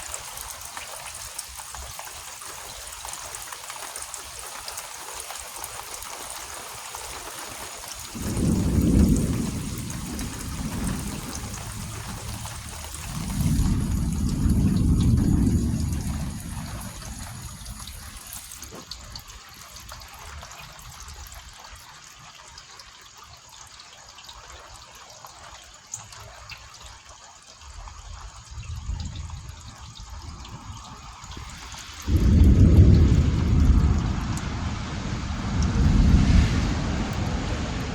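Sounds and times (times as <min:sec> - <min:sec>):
water trickling and dripping: 0:00.0 - 0:37.9
low rumble: 0:08.2 - 0:18.5, 0:29.0 - 0:37.9.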